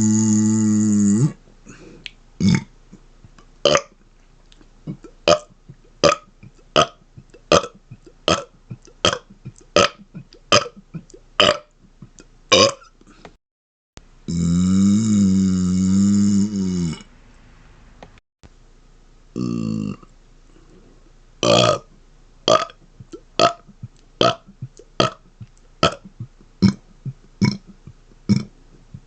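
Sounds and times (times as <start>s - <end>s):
man burping: 0.0s - 1.8s, 2.4s - 2.7s, 3.6s - 3.9s, 4.9s - 12.9s, 14.3s - 17.1s, 19.4s - 20.1s, 21.4s - 21.9s, 22.5s - 28.5s.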